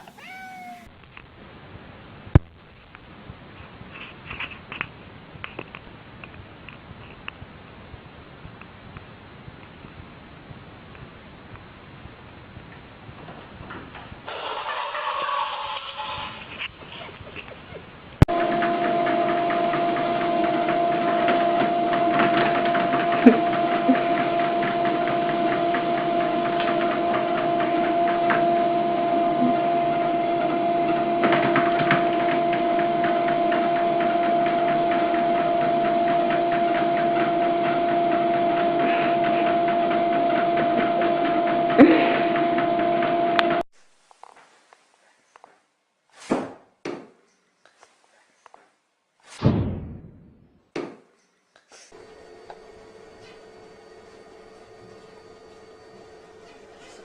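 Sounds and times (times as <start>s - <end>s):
small machine humming and ticking: 18.3s - 43.6s, 51.9s - 57.0s.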